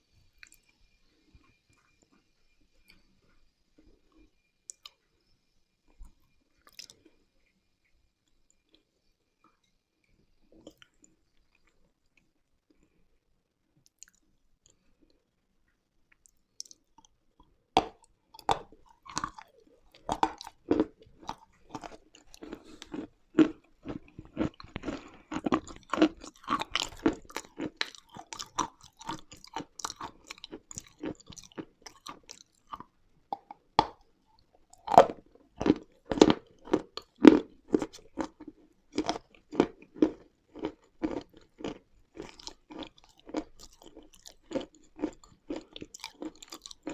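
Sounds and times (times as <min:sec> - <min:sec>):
person chewing crunchy chalk: 0:17.8 - 0:34.0, 0:34.7 - 0:46.9.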